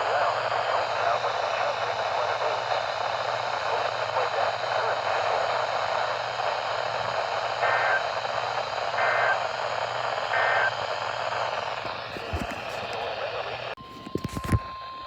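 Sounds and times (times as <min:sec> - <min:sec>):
radio static hiss: 0:00.0 - 0:14.7.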